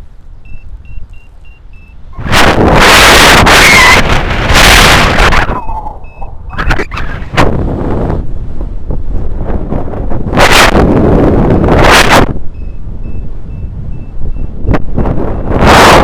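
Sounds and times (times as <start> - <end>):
wind buffeting microphone: 0.0 - 16.0
variometer beeping high tones: 0.4 - 2.0, 5.5 - 6.6, 12.5 - 14.6.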